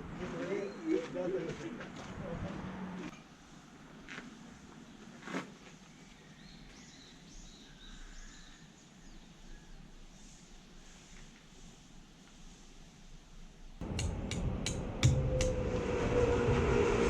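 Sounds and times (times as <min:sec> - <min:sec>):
small birds chirping: 0:05.8 - 0:11.2
sharp knock: 0:13.8 - 0:15.6.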